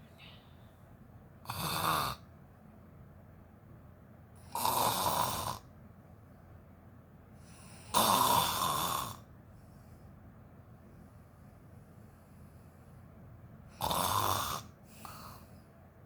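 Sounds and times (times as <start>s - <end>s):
woman snoring: 1.4s - 2.2s, 4.5s - 5.7s, 7.8s - 9.3s, 13.8s - 15.4s.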